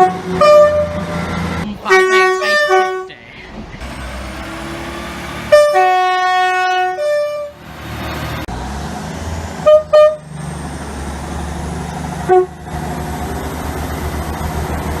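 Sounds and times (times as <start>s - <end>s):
train two-tone horn: 0.0s - 1.2s, 1.9s - 3.1s, 5.5s - 7.6s, 9.6s - 10.2s, 12.2s - 12.6s
train running noise: 0.0s - 15.0s.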